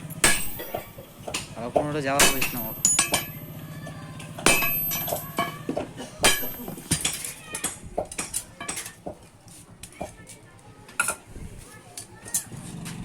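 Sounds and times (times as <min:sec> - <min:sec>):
hammer striking steel: 0:00.0 - 0:03.6, 0:04.2 - 0:09.2
light metallic taps and clinks: 0:00.3 - 0:03.5.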